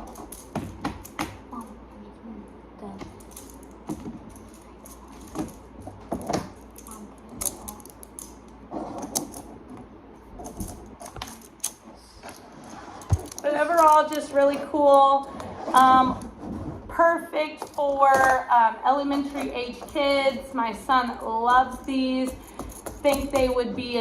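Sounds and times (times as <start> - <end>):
plastic blocks clicking together: 6.6 - 8.4, 13.2 - 14.6.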